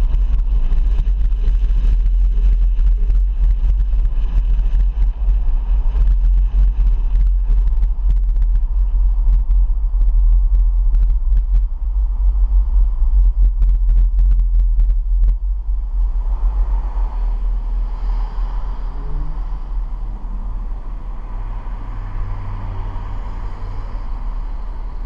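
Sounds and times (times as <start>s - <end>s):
car driving rumble: 0.0s - 25.0s.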